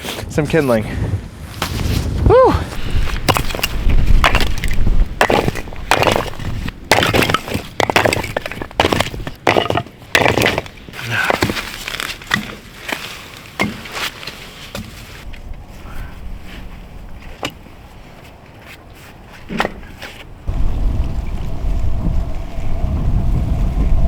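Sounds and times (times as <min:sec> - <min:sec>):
crunching in frozen snow: 0:01.4 - 0:09.6, 0:10.2 - 0:15.2
firewood logs knocking together: 0:03.2 - 0:13.0, 0:13.6 - 0:14.0, 0:19.5 - 0:20.2.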